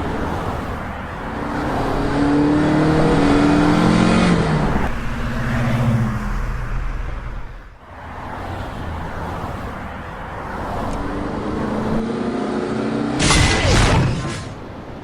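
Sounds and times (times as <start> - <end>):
loud crash: 13.2 - 14.7.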